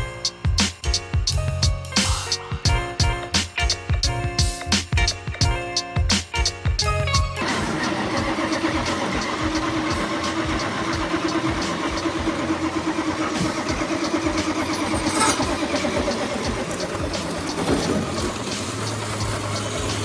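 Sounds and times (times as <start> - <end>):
light engine ticks: 7.4 - 20.0
vehicle engine running: 7.4 - 20.0.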